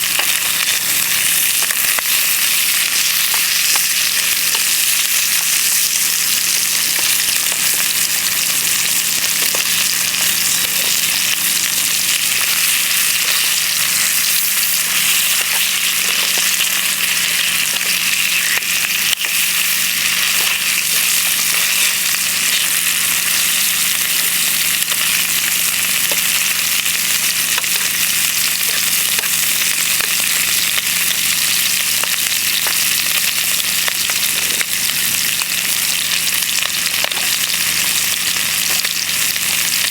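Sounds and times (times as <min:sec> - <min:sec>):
bacon and eggs sizzling: 0:00.0 - 0:39.9.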